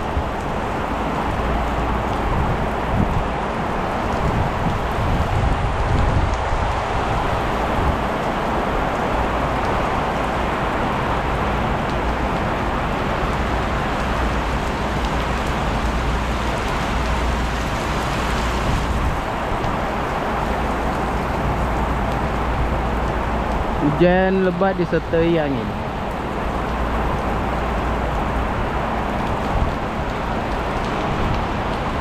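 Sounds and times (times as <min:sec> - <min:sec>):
heavy rain pouring: 0:00.0 - 0:32.0
strong wind: 0:00.0 - 0:32.0.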